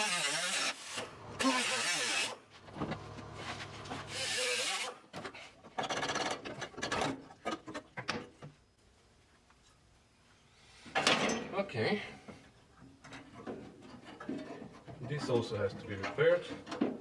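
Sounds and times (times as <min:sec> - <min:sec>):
rubbing and scraping on car body: 0:02.5 - 0:04.1.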